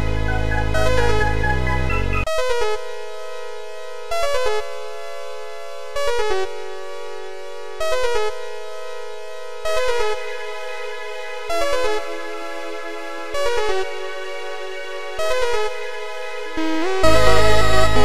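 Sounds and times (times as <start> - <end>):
electronic music synthesizer chords: 0.0 - 4.8, 16.6 - 18.0.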